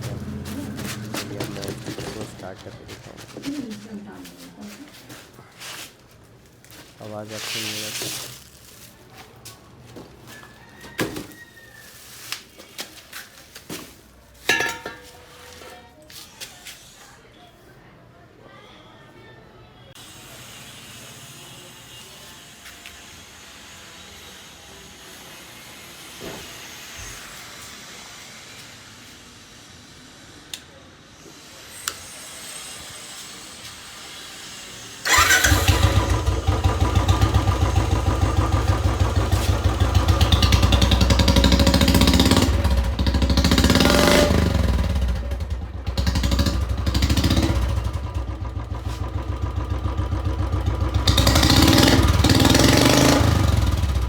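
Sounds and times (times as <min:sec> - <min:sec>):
motorcycle exhaust beat: 0:00.0 - 0:04.1, 0:35.1 - 0:54.0.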